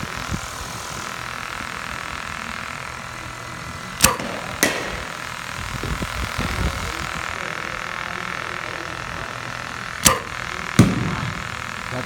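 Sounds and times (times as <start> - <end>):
low background hum: 0.0 - 12.0
bat striking ball crack: 4.0 - 5.2, 10.0 - 11.4.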